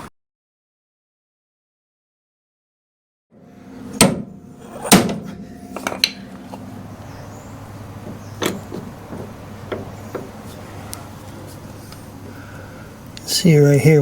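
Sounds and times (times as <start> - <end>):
hammer striking steel frame: 3.4 - 10.5
steady low hum: 3.4 - 14.0.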